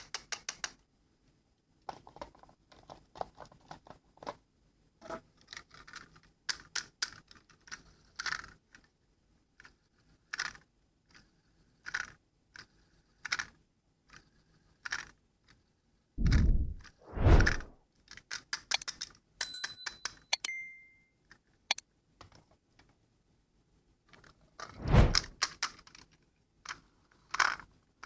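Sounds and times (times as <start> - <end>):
heavy low thump: 16.2 - 17.7
louder single strokes: 16.2 - 17.7, 24.7 - 25.3.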